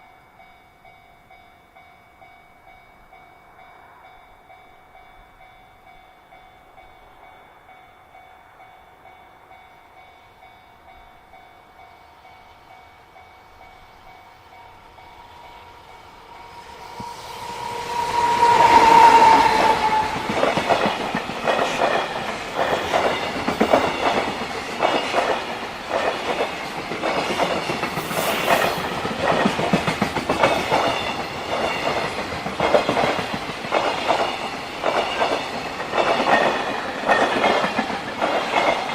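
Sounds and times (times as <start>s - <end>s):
level-crossing warning bell: 0.0s - 38.9s
train wheels clattering on rails: 13.2s - 38.9s
train horn blast: 16.5s - 20.4s.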